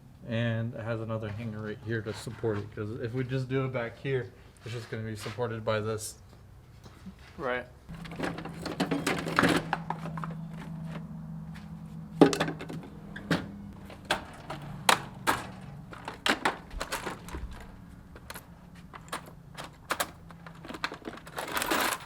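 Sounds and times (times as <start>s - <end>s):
steady low hum: 7.8s - 21.8s
tools and parts clattering: 7.9s - 11.2s, 12.1s - 22.0s.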